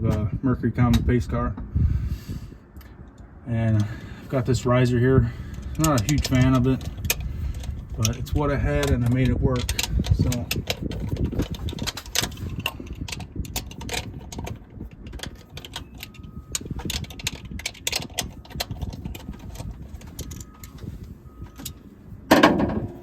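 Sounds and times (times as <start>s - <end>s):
hand tools clicking and clattering: 5.5s - 20.9s
loud metal clunk: 22.3s - 23.0s.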